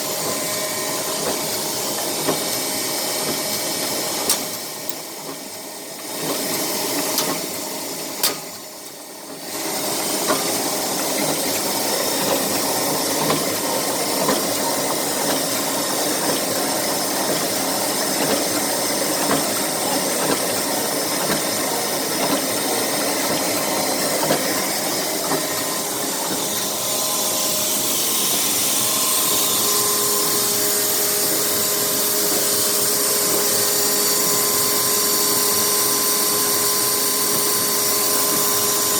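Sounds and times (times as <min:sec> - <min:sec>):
electric motor machine running: 0:09.4 - 0:38.9.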